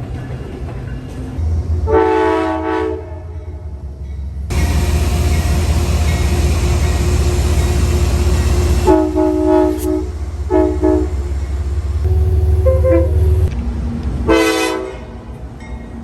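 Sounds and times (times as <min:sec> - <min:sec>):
train rumbling: 0:00.0 - 0:16.0
train horn blasts: 0:01.9 - 0:03.5, 0:08.0 - 0:13.5, 0:14.3 - 0:15.2.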